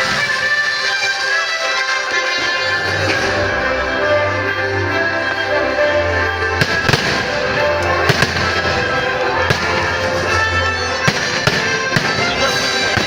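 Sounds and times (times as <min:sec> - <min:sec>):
fireworks bursting: 0:00.0 - 0:01.2, 0:06.5 - 0:13.0.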